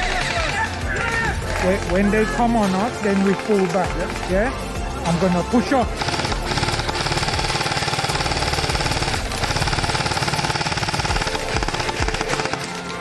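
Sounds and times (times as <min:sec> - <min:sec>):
airsoft rifle automatic fire: 0:05.1 - 0:12.8.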